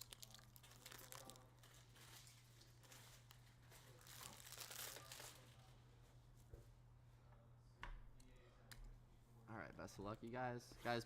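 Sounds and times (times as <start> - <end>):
plastic wrapping tearing and crinkling: 0.0 - 5.7.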